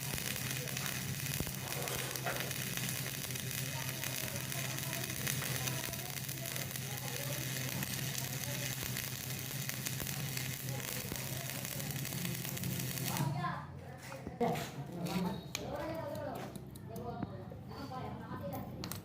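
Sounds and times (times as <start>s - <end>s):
welding arc crackling and sizzling: 0.0s - 13.7s.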